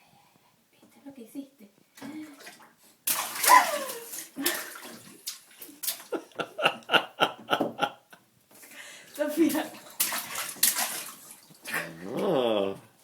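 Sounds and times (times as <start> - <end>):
child splashing water: 2.0 - 6.2, 9.1 - 12.4.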